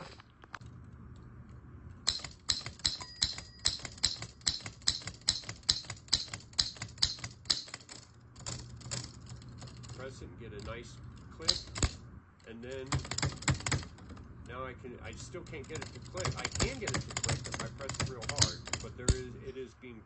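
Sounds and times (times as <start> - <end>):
typewriter keystroke clacks: 2.1 - 10.0, 10.6 - 10.8, 11.4 - 12.0, 12.7 - 14.2, 15.6 - 19.2.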